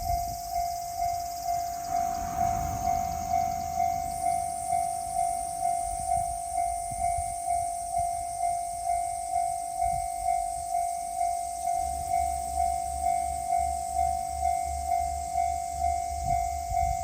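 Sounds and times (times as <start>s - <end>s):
low rumbling: 1.1s - 6.6s.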